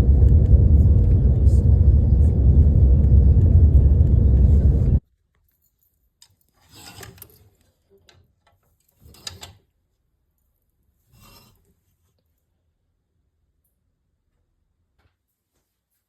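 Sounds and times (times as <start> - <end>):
vehicle rumbling in motion: 0.0 - 5.0
soft rustling and scraping: 5.4 - 9.7, 10.4 - 12.5.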